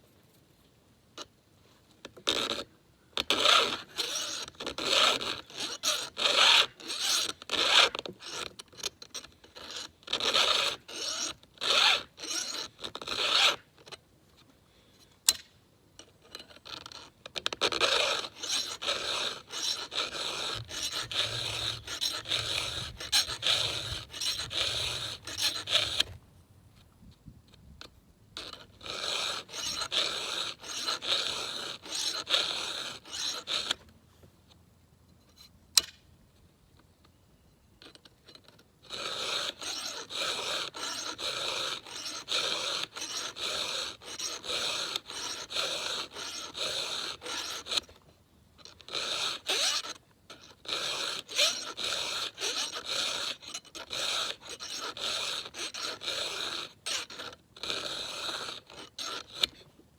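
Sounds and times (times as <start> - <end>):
file rasping on saw chain: 3.3 - 13.6, 16.3 - 26.2, 28.4 - 33.8, 38.8 - 47.9, 48.7 - 59.6.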